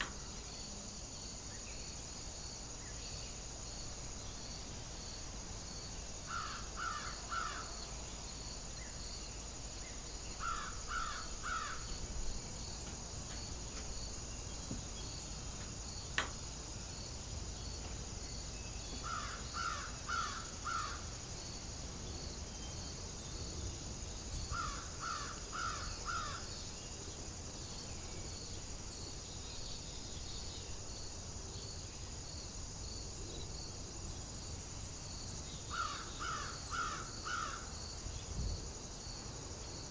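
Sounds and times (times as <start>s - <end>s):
insects chorus: 0.0s - 39.9s
crow cawing: 6.3s - 7.7s, 10.4s - 11.8s, 19.0s - 21.0s, 24.6s - 26.4s, 35.7s - 37.7s.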